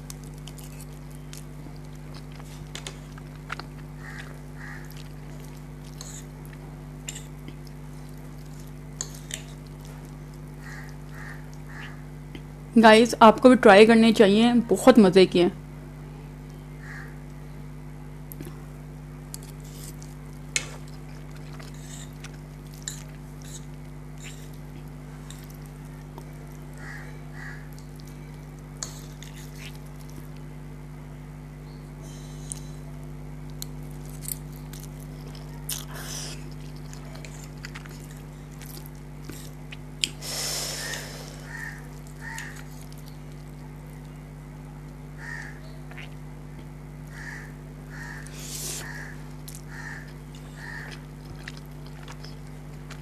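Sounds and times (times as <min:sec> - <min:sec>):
chewing and slurping: 0:00.0 - 0:12.0, 0:19.3 - 0:26.8, 0:27.7 - 0:30.4, 0:33.5 - 0:44.1, 0:45.9 - 0:46.7, 0:48.0 - 0:53.0
steady low hum: 0:00.0 - 0:53.0.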